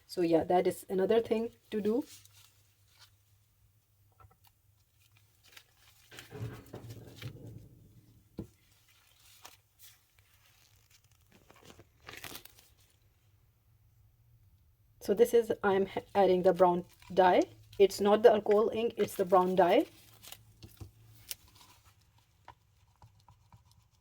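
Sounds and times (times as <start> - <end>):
rustling: 2.0 - 3.4, 4.8 - 13.1, 16.0 - 22.6.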